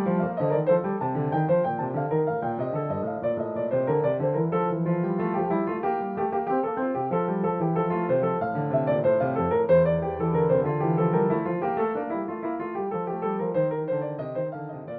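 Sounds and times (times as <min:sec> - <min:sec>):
piano melody over chords: 0:00.0 - 0:14.9.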